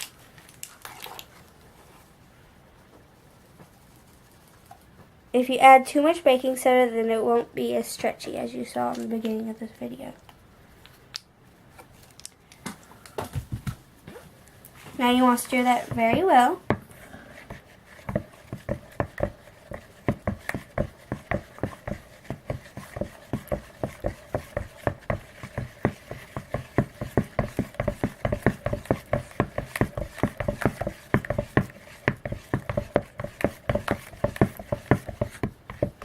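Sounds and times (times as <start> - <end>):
tool stirring slime in bowl: 15.0 - 36.0.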